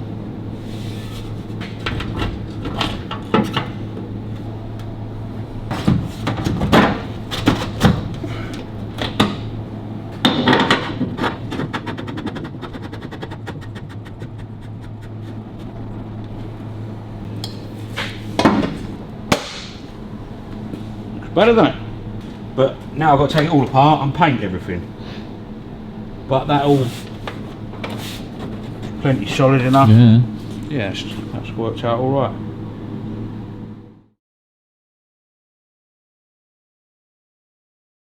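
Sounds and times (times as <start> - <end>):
steady low hum: 0.0 - 34.1
metal clanks and knocks: 10.2 - 13.7.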